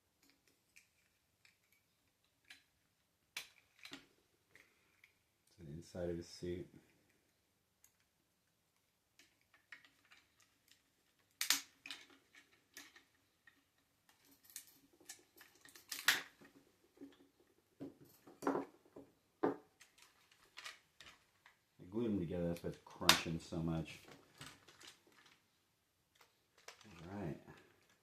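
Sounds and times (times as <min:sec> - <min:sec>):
hard plastic crunching and clicking: 0:22.5 - 0:25.5, 0:26.1 - 0:28.0.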